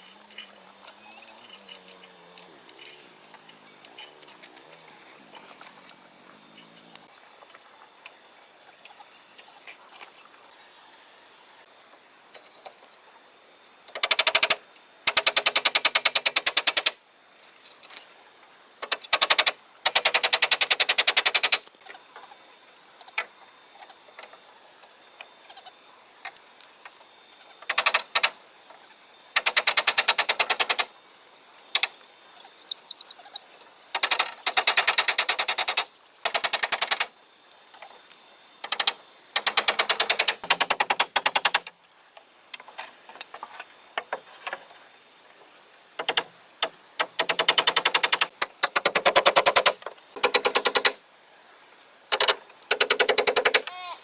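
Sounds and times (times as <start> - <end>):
rapid mechanical hammering: 13.9 - 17.0, 18.8 - 21.6, 27.7 - 28.4, 29.4 - 30.9, 34.0 - 37.1, 38.6 - 41.7, 46.0 - 46.3, 47.0 - 51.0, 52.1 - 53.7.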